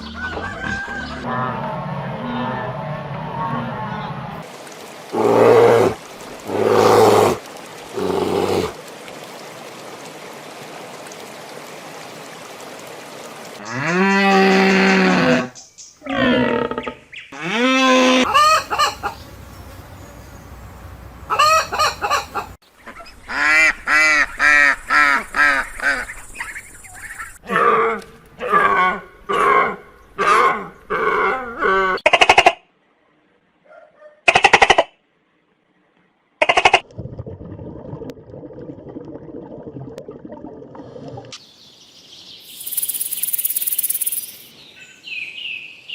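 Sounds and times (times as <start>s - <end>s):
poultry honking: 17.4s - 22.6s.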